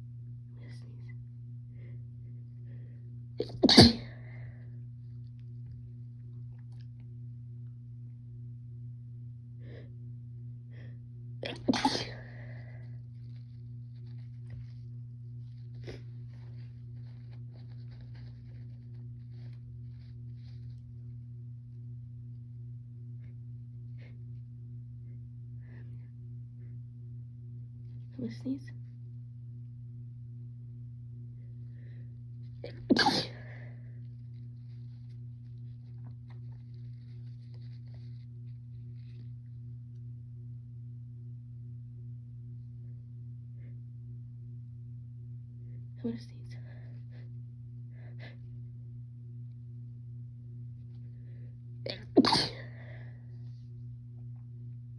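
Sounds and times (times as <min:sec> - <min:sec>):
low electrical hum: 0:00.0 - 0:54.9
rustles and breaths: 0:00.3 - 0:03.4, 0:04.0 - 0:06.1, 0:12.1 - 0:21.4, 0:23.0 - 0:29.0, 0:31.2 - 0:39.8, 0:45.5 - 0:48.8, 0:50.8 - 0:51.8, 0:52.6 - 0:54.3
woman sneezing: 0:03.4 - 0:04.3, 0:11.4 - 0:12.4, 0:32.7 - 0:33.6, 0:51.9 - 0:53.0.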